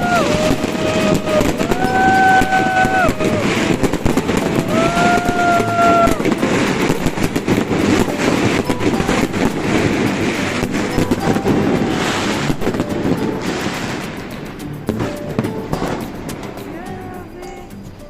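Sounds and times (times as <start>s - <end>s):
voices: 0.0s - 13.5s, 16.6s - 18.0s
fireworks crackling and popping: 0.0s - 18.0s.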